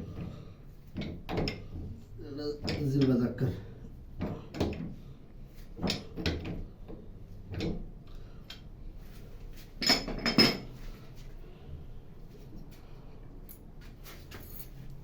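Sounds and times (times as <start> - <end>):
metal tools knocking and clinking: 2.6 - 3.2, 9.8 - 10.7.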